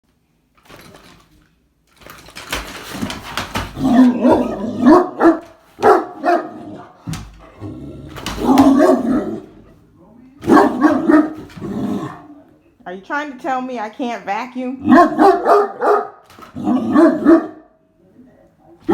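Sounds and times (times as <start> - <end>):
dog barking: 3.8 - 7.0, 8.4 - 9.4, 10.4 - 11.5, 14.8 - 17.7.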